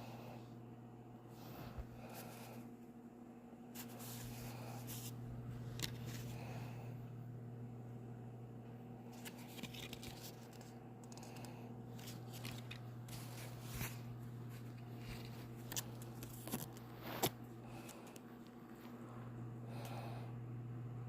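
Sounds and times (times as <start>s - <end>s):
low electrical hum: 0.0s - 21.0s
handling rustling and scrapes: 3.7s - 6.6s, 9.0s - 19.3s.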